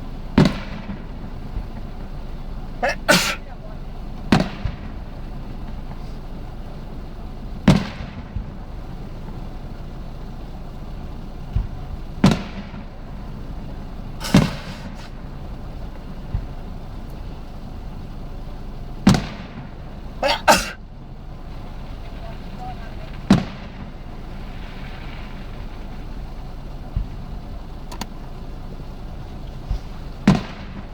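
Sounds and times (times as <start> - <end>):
small firework pops: 0.4 - 1.7, 14.2 - 15.2, 29.6 - 30.9
fireworks booming: 14.1 - 15.4.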